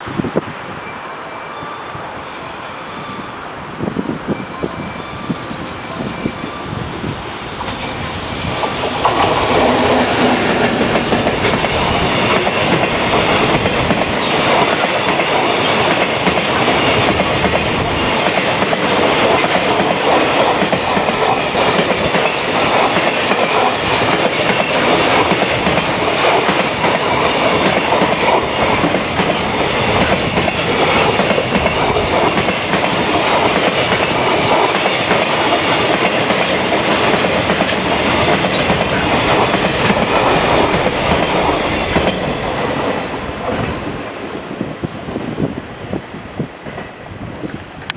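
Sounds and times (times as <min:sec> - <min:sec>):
freight train wagons rumbling: 0:03.4 - 0:47.9
wheels clacking over rail joints: 0:06.7 - 0:44.0.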